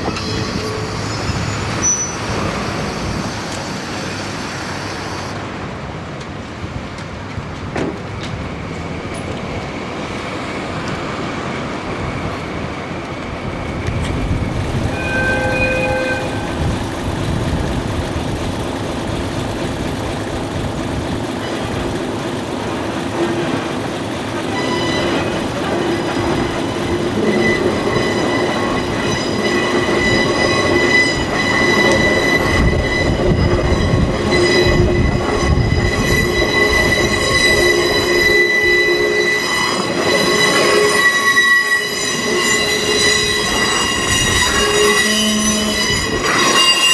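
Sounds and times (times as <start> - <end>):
high wheel squeal: 0.0 - 5.4, 13.7 - 19.4, 23.1 - 46.9
train rumbling along track: 0.0 - 46.9.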